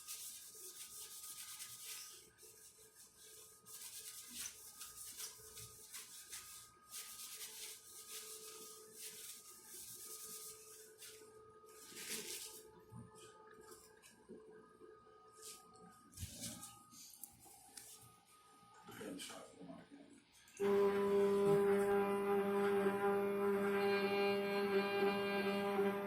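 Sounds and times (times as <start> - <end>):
faint rubbing strokes: 0.0 - 13.9, 15.3 - 18.6.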